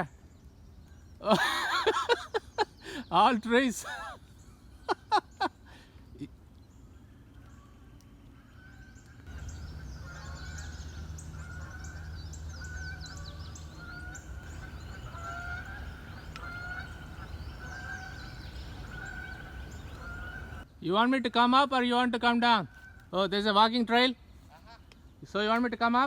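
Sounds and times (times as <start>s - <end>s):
birds chirping: 0.0s - 26.0s
steady low rumble: 9.3s - 20.7s.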